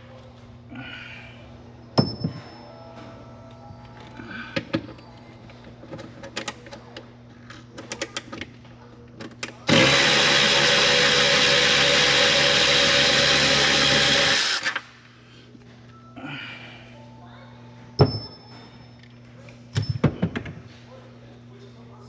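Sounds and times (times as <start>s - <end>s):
cordless power tool whirring: 9.7s - 14.8s.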